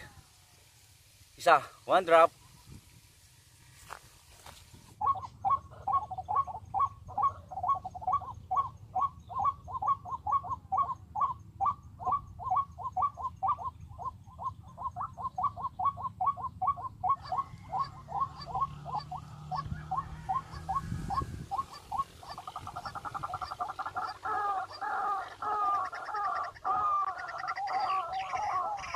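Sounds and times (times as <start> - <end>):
bird calling rapidly: 5.0 - 28.9.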